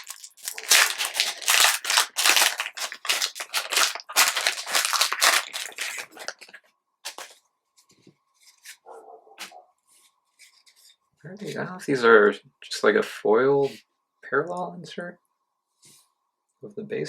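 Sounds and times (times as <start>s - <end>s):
cards being shuffled: 0.0s - 7.4s.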